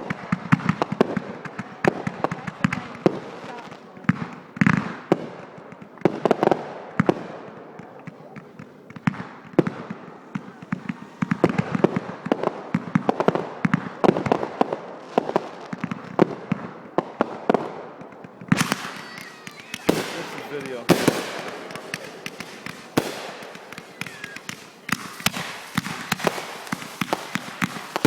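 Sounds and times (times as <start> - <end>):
fireworks bangs and crackling: 0.0 - 28.0.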